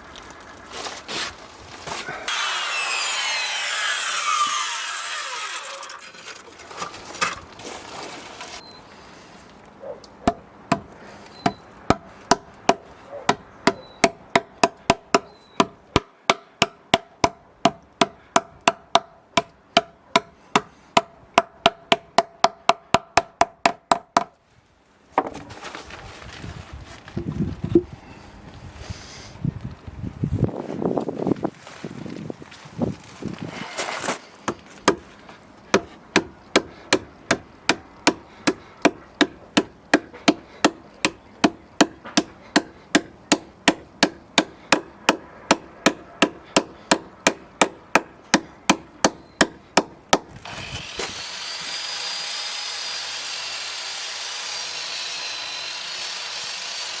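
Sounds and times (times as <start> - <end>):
saw cutting timber: 2.0 - 6.6, 10.7 - 22.6, 49.0 - 57.0.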